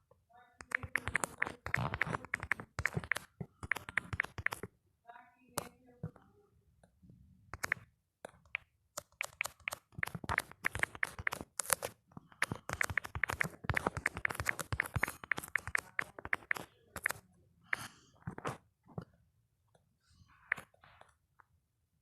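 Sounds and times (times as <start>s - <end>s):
keyboard typing clicks: 0.6s - 4.7s, 7.5s - 18.5s, 20.5s - 21.1s.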